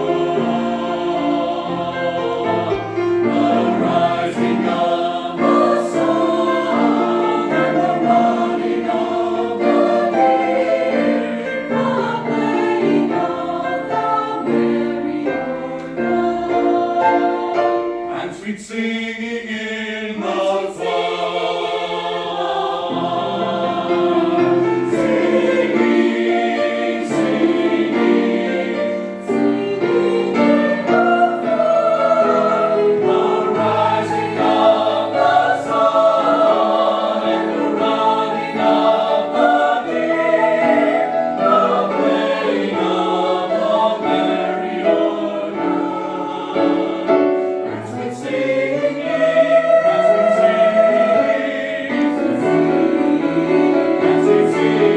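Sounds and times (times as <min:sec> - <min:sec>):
choir singing in parts: 0:00.0 - 0:54.9.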